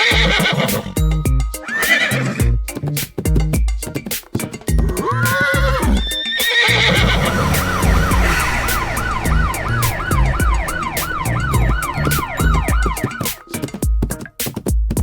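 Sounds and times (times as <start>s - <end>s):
horse whinny: 0.0s - 0.9s, 1.7s - 2.4s, 4.9s - 10.7s
background music with beat: 0.0s - 15.0s
siren wailing: 6.7s - 13.5s.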